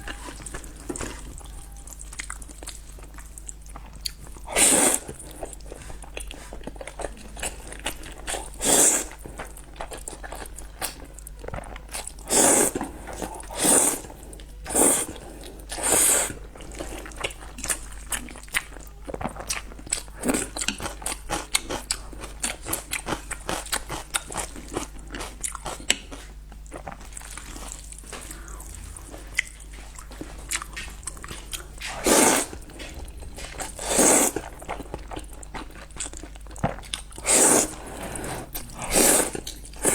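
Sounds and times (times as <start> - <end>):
chewing with wet clicks: 0.0 - 39.9
loud short slurps: 31.9 - 32.6, 33.8 - 34.4, 37.2 - 39.9.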